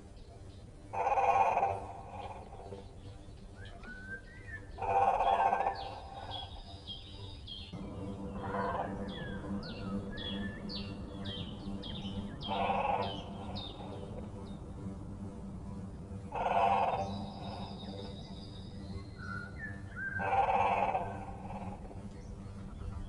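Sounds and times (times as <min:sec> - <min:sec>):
lower bird call: 0:00.9 - 0:14.6, 0:16.3 - 0:23.0
high falling bird chirps: 0:03.1 - 0:14.2.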